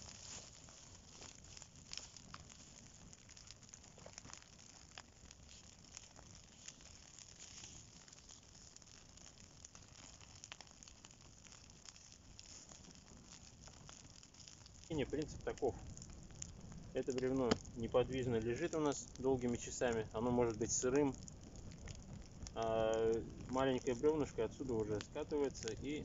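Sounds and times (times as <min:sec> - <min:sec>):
fire crackling faintly: 0:00.0 - 0:26.0
fire popping: 0:00.0 - 0:26.0.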